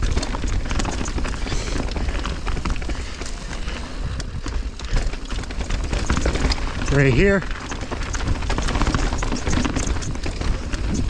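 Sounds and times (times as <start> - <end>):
bike rattling over rocks: 0.0 - 11.0
wind rumble on microphone: 0.0 - 11.0.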